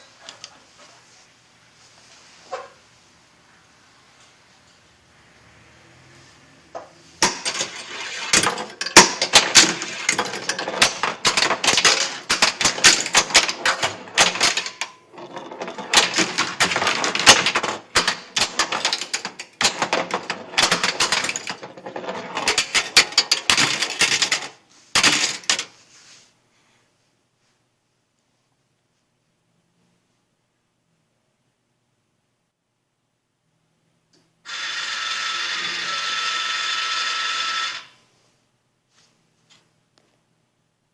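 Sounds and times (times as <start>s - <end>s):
pinball machine clattering: 7.2s - 25.7s.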